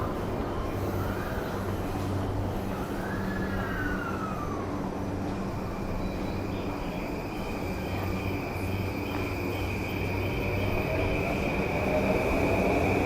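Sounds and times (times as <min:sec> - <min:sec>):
electric train rumbling: 0:00.0 - 0:13.0
train whine: 0:00.0 - 0:13.0.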